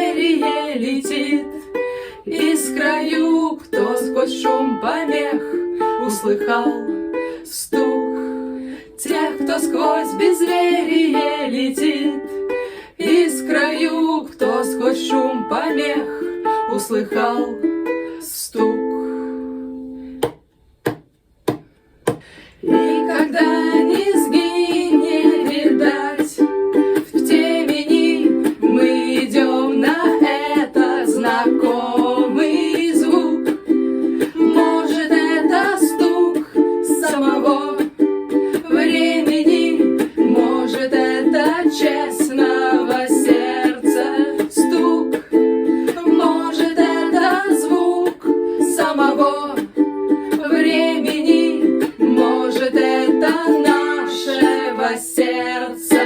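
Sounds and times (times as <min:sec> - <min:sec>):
ukulele strumming: 0:00.0 - 0:56.0
sharp knocks: 0:20.2 - 0:22.3.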